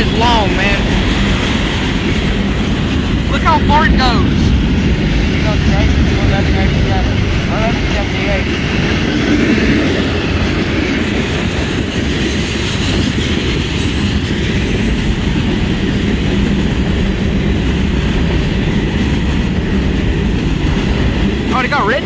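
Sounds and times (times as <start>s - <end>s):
freight train wheels on rails: 0.0s - 22.0s.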